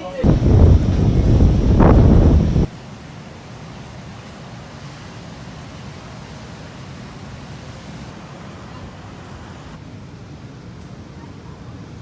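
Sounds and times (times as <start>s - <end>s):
wind noise: 0.0s - 2.7s
sea surf: 0.0s - 12.0s.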